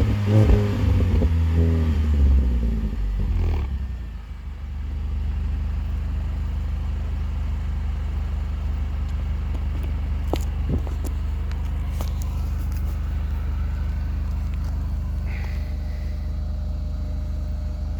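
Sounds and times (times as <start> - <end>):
car engine idling: 0.0 - 17.9.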